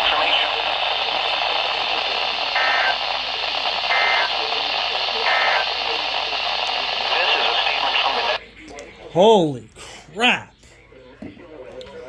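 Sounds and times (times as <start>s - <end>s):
radio static: 0.0s - 8.4s.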